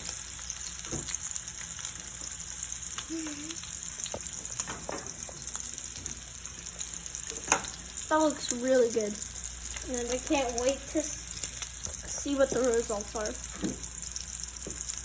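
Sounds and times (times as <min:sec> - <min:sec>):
steak sizzling in frying pan: 0:00.0 - 0:15.0.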